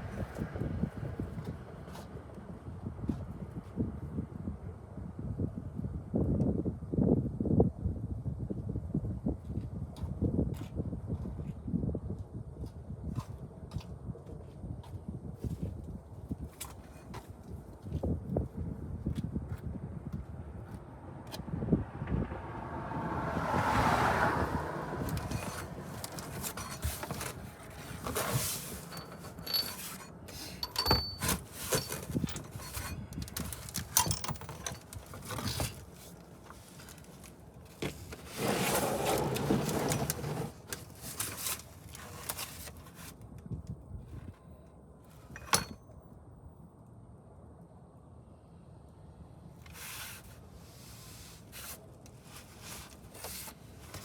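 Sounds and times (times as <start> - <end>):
vehicle passing: 21.8 - 26.6
clinks and scrapes of hand tools: 24.9 - 43.2, 45.1 - 45.8, 49.7 - 54.0.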